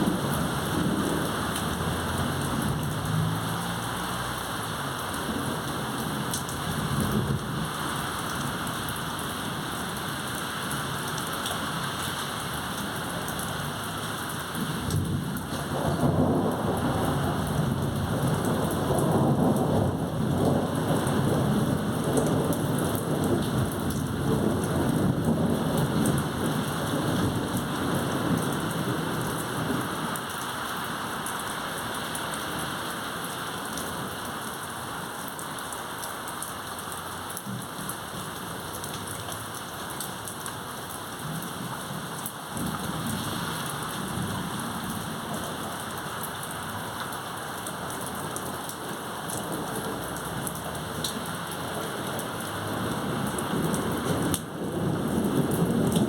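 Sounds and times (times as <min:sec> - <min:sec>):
steady rain: 0:00.0 - 0:56.0
thunder rolling: 0:14.7 - 0:28.4.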